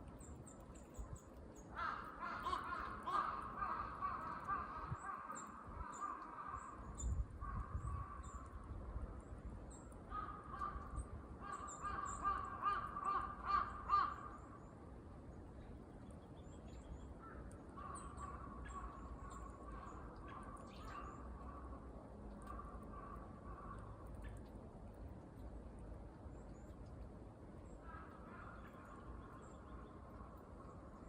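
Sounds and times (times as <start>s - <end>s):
crows cawing: 1.8s - 6.8s, 10.1s - 10.8s, 11.4s - 14.3s, 27.8s - 28.8s.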